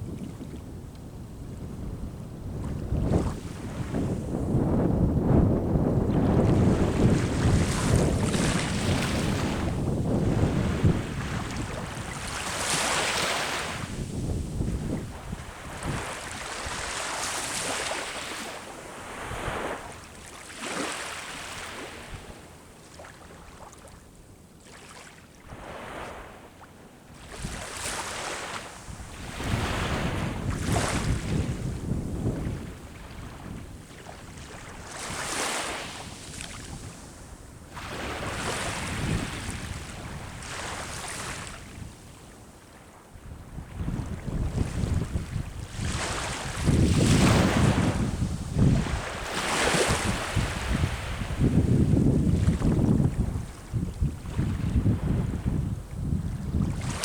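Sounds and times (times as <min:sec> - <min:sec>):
wind rumbling on microphone: 0:00.0 - 0:20.0, 0:27.2 - 0:42.3, 0:43.2 - 0:57.0
sea waves breaking on shore: 0:02.6 - 0:24.0, 0:24.6 - 0:57.0.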